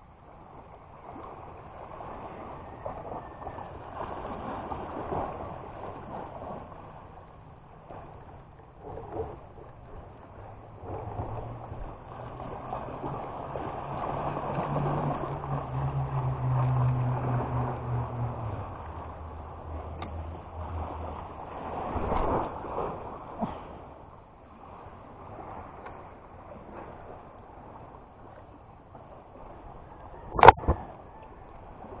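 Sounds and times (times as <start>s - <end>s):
sea waves washing on shore: 0.0s - 32.0s
low motor hum: 5.2s - 24.1s.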